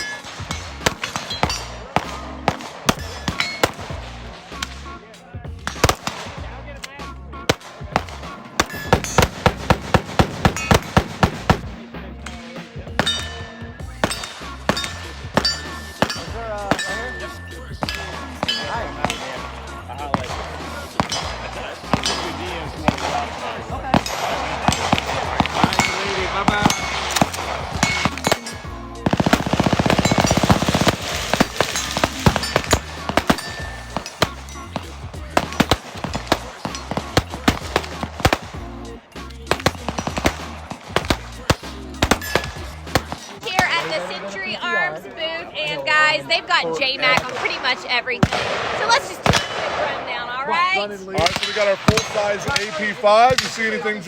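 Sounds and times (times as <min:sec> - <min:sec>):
semi-automatic gunshots: 0:00.0 - 0:04.9, 0:05.7 - 0:06.5, 0:07.5 - 0:38.7, 0:39.4 - 0:44.0, 0:47.1 - 0:50.2, 0:51.2 - 0:53.9
automatic gunfire: 0:07.5 - 0:11.8, 0:20.2 - 0:34.5, 0:35.3 - 0:38.6.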